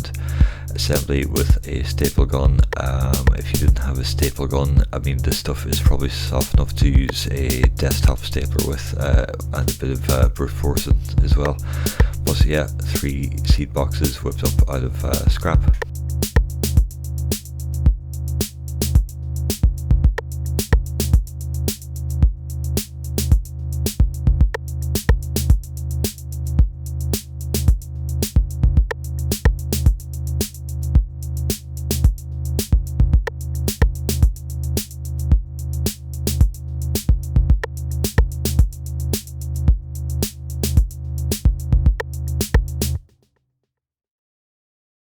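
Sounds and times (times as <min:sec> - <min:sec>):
synth bass: 0:00.0 - 0:15.9
electronic music with drum beat: 0:00.0 - 0:43.0.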